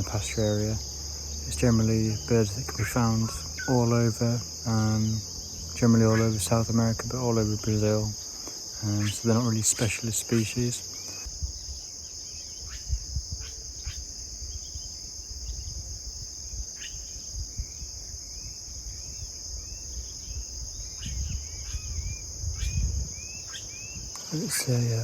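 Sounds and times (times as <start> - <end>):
insects chorus: 0.0 - 25.0
bird chirps: 19.6 - 24.4.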